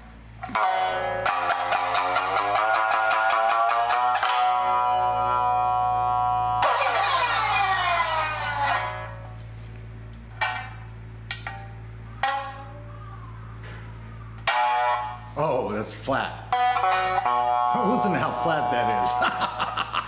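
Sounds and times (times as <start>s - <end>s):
shamisen playing: 0.5s - 9.4s, 10.4s - 12.9s, 14.4s - 15.5s, 16.4s - 19.9s.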